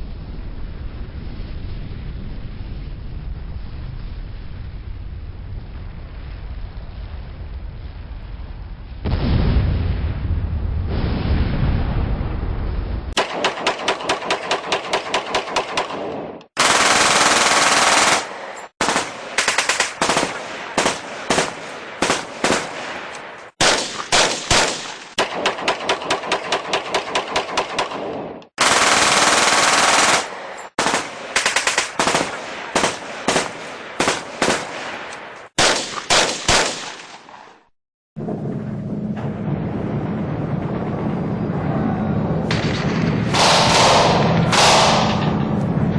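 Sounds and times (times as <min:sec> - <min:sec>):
low rumble: 0:00.0 - 0:13.4, 0:38.2 - 0:45.9
machine-gun fire: 0:13.2 - 0:37.3, 0:42.5 - 0:45.5.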